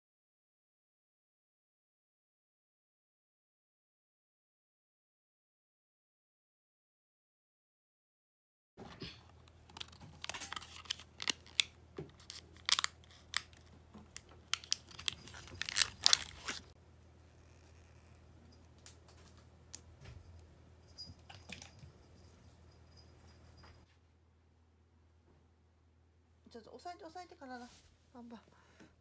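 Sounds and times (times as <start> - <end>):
plastic packaging tearing and crinkling: 9.4 - 18.2.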